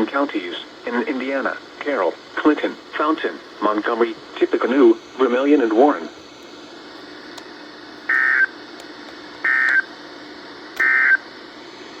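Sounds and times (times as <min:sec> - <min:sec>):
faint steady hum: 0:00.0 - 0:12.0
buzzy digital data tone bursts: 0:08.1 - 0:08.5.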